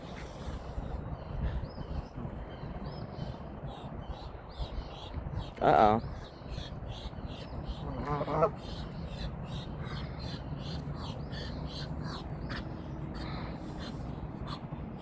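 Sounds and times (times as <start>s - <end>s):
waterfowl calling: 3.2s - 14.7s.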